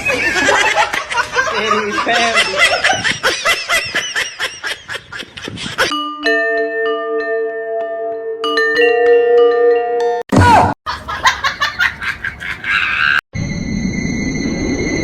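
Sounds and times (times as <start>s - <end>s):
laughter in rapid bursts: 0.0s - 5.9s, 10.9s - 13.2s
music with ringing held notes: 5.9s - 10.2s.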